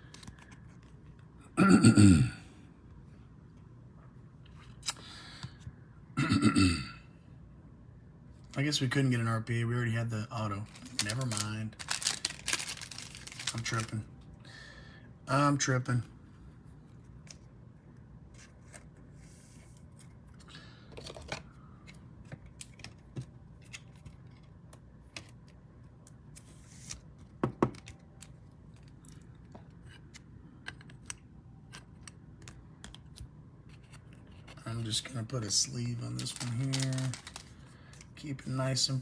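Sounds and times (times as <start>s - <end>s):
trading cards clicking and scraping: 36.0s - 38.2s.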